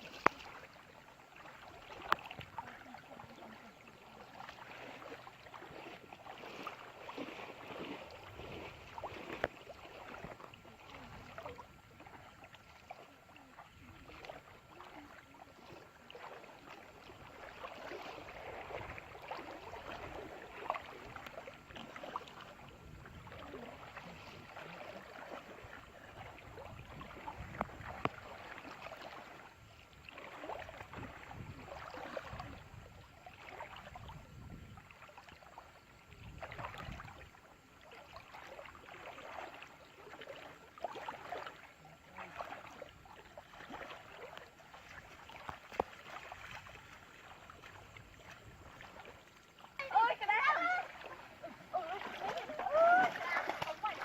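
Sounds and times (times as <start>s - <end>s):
water sloshing and splashing: 0.0s - 54.0s.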